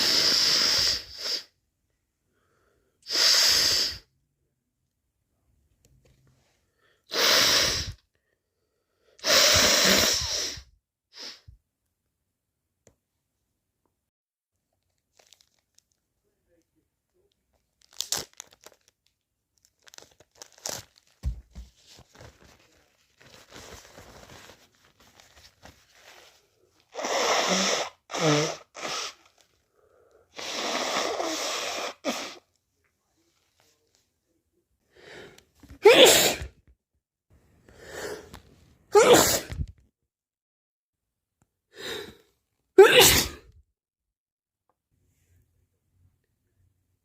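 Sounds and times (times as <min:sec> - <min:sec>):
person sneezing: 0:07.1 - 0:08.0, 0:09.2 - 0:11.5, 0:26.9 - 0:29.2, 0:30.4 - 0:32.4, 0:35.7 - 0:36.6, 0:38.9 - 0:39.6, 0:42.8 - 0:43.5
crinkling and rustling: 0:14.6 - 0:26.9.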